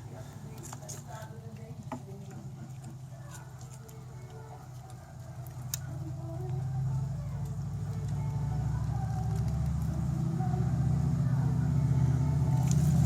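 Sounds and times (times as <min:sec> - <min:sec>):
vehicle engine rumble: 0:00.0 - 0:13.0.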